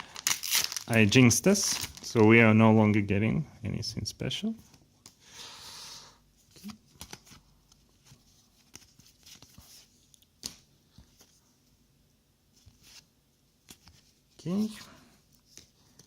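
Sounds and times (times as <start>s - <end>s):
cards clicking and rustling: 6.5s - 7.4s.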